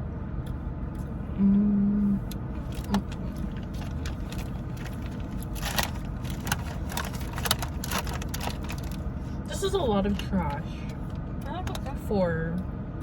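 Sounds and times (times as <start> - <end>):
car interior rumble: 0.0 - 13.0
plastic wrappers crinkling: 2.6 - 9.1.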